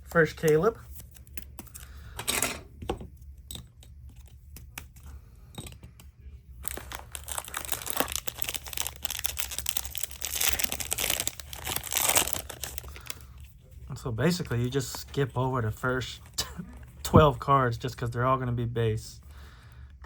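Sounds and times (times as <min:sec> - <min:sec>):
plastic wrapper tearing and crinkling: 0:06.6 - 0:13.4.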